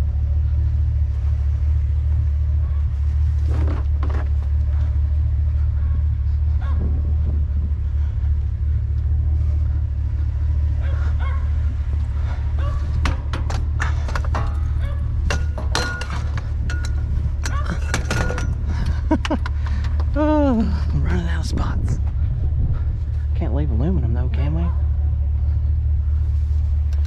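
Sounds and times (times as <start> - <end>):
low vehicle rumble: 0.0 - 27.0
scrap metal clanking: 12.4 - 19.1.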